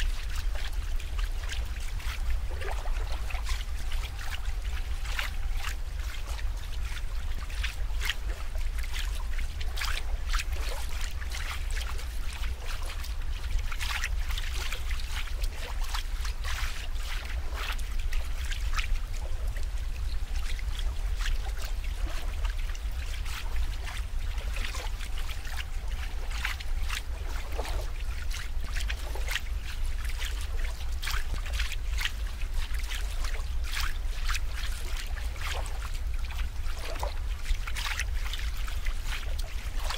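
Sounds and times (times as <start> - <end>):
steady low rumble: 0.0 - 39.9
water trickling and splashing: 0.0 - 39.9.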